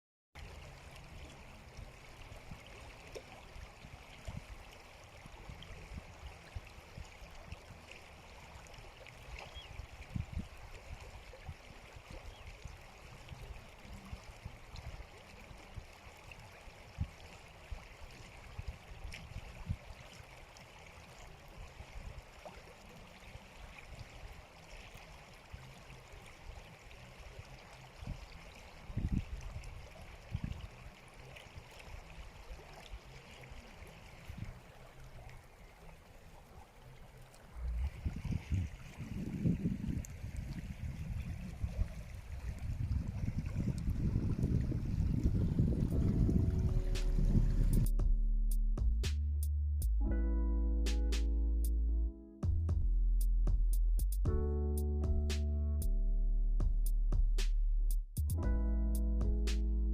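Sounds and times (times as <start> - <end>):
stream flowing: 0.4 - 47.9
low rumbles: 37.5 - 38.2, 43.9 - 59.9.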